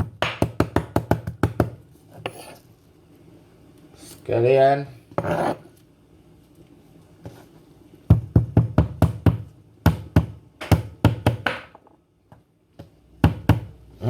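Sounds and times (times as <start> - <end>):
knife chopping on cutting board: 0.0 - 2.4, 8.1 - 11.8.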